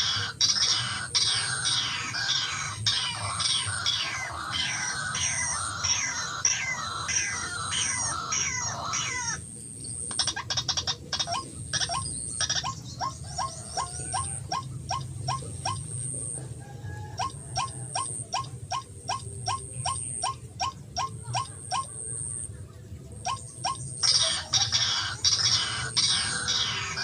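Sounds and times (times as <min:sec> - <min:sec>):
waterhen calling harsh kru-ak: 0:00.0 - 0:09.4, 0:23.3 - 0:27.0.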